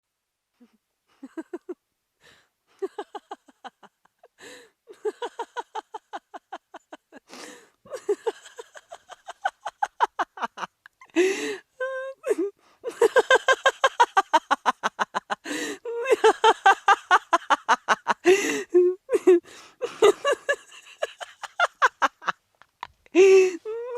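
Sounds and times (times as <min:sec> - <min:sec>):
woman laughing: 0:01.2 - 0:01.8, 0:02.8 - 0:23.9
gasping in-breaths: 0:04.4 - 0:04.8, 0:07.2 - 0:07.8, 0:11.1 - 0:11.8, 0:15.4 - 0:15.9, 0:19.4 - 0:19.9, 0:23.1 - 0:23.8.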